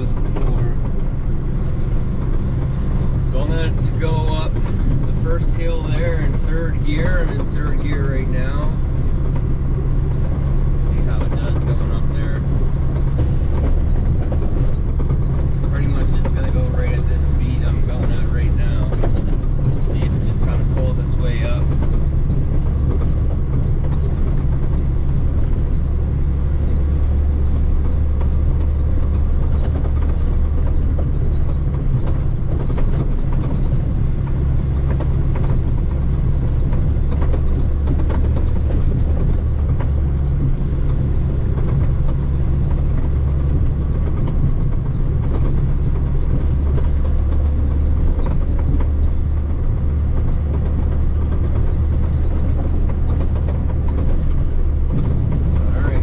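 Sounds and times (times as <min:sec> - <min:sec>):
diesel truck engine pulling under load: 0:00.0 - 0:56.0.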